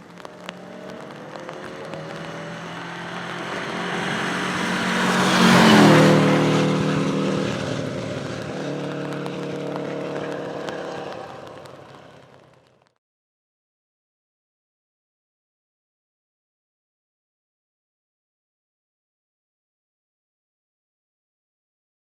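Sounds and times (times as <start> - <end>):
rally car passing at speed: 0.0 - 12.8.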